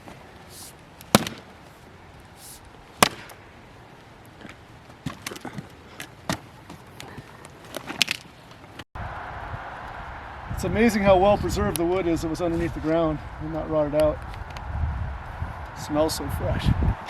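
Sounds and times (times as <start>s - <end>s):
axe chopping wood: 1.1s - 1.5s, 3.0s - 3.4s.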